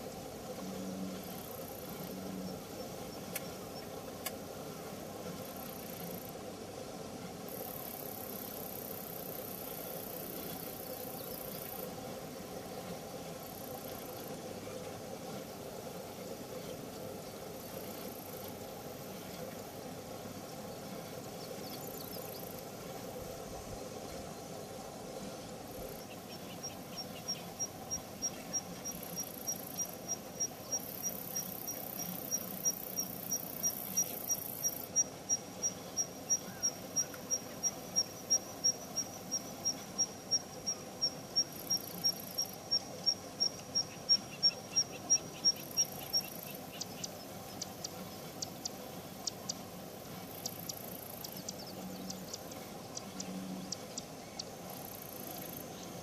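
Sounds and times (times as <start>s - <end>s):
steady low hum: 0.0s - 56.0s
dry ticks: 3.2s - 4.4s.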